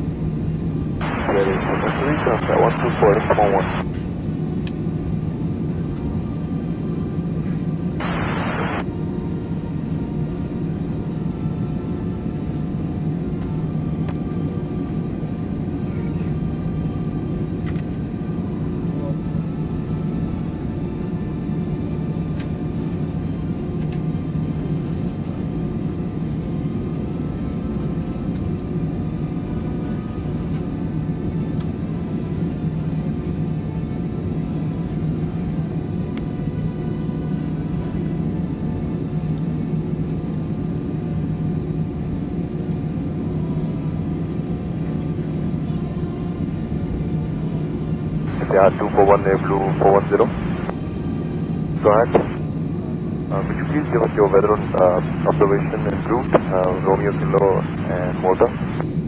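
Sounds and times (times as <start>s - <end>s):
airplane cabin hum: 0.0s - 59.0s
radio static burst: 1.0s - 3.8s, 8.0s - 8.8s, 48.3s - 50.7s, 51.8s - 52.4s, 53.4s - 58.8s.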